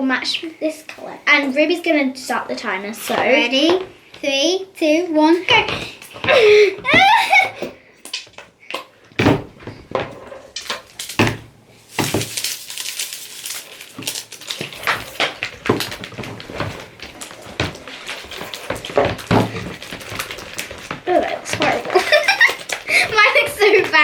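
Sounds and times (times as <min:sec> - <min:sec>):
spatulas knocking on plastic bowls: 0:05.2 - 0:12.4, 0:14.7 - 0:24.0
spatula scraping and stirring: 0:13.5 - 0:24.0.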